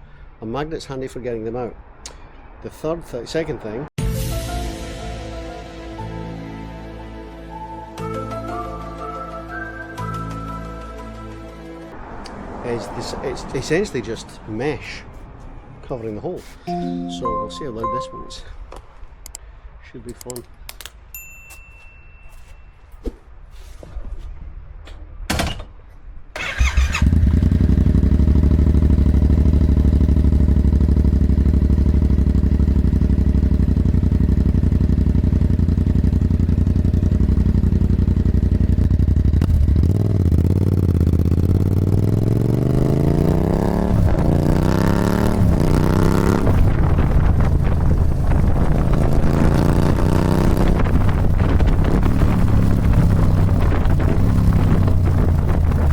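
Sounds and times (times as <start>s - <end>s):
motorcycle engine idling and revving: 26.4s - 55.9s.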